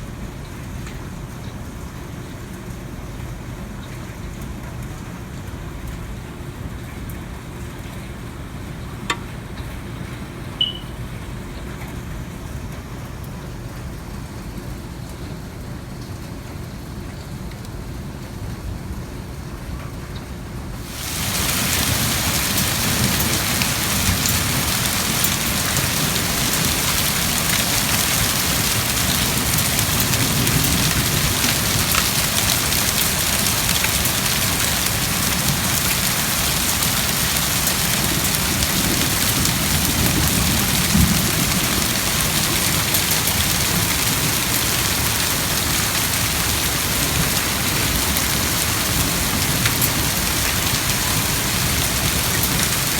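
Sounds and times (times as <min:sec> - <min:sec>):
heavy rain and hail: 0:20.6 - 0:52.9.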